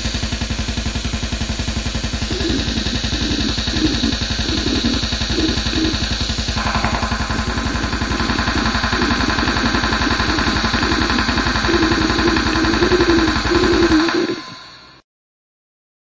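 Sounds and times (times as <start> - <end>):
very fast drum pulse: 0.0 - 14.8
harsh distorted noise: 0.0 - 15.0
held low tone: 2.2 - 14.9.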